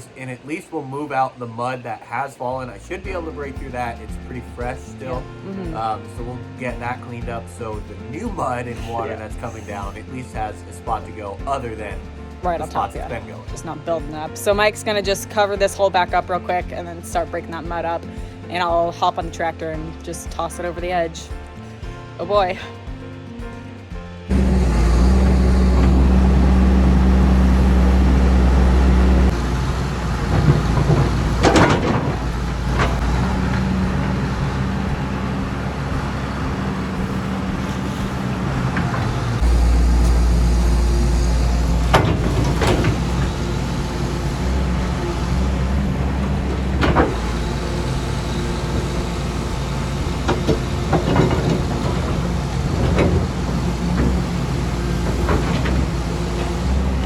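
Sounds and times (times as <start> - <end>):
heavy equipment engine running: 24.3 - 57.0
sharp knocks and scrapes: 29.2 - 40.5, 41.1 - 56.9.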